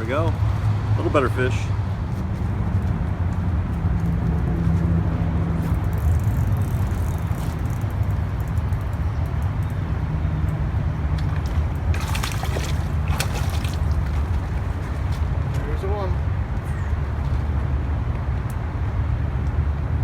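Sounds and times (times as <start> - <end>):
river water trickling at shore: 5.6 - 17.6.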